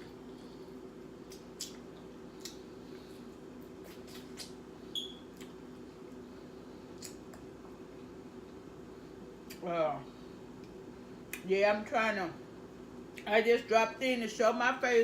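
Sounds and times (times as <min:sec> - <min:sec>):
steady low hum: 0:00.0 - 0:15.0
wet chewing clicks and smacks: 0:01.2 - 0:02.7, 0:03.6 - 0:04.6, 0:05.3 - 0:05.6, 0:06.9 - 0:07.5.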